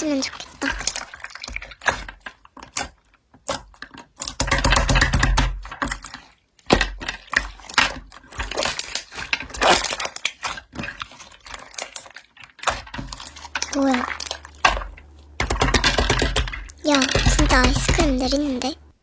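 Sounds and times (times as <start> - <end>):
slime squeezed crackling and popping: 7.4 - 17.3.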